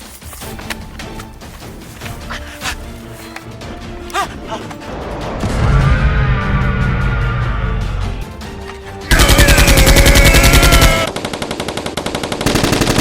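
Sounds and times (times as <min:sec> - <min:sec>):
background music: 0:00.0 - 0:12.4
automatic gunfire: 0:09.1 - 0:13.0.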